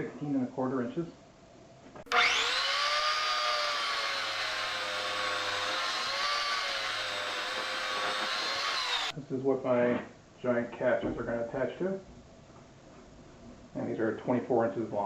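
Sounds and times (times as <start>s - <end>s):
power tool motor whining: 2.1s - 9.1s.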